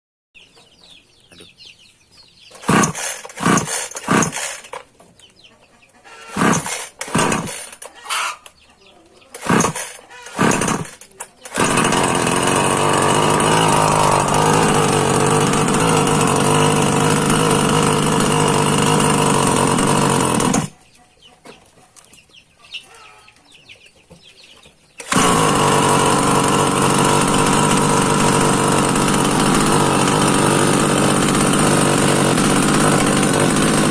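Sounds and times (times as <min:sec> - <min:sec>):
chickens clucking: 0:00.4 - 0:02.7, 0:04.8 - 0:06.4, 0:07.7 - 0:10.4, 0:20.7 - 0:25.0
chainsaw engine sputtering and running: 0:02.5 - 0:04.9, 0:06.1 - 0:08.0, 0:09.3 - 0:20.8, 0:25.0 - 0:33.9.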